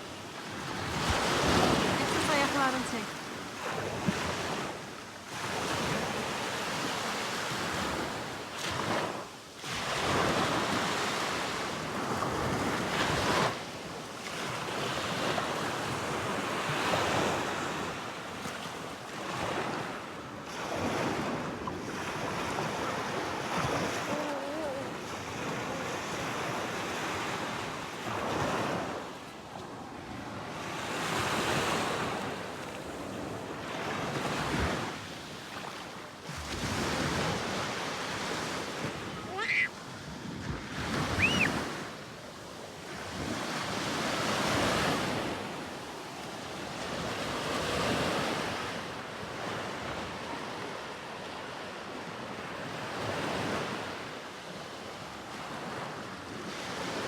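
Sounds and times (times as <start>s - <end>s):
surf washing onto shore: 36.3s - 54.0s.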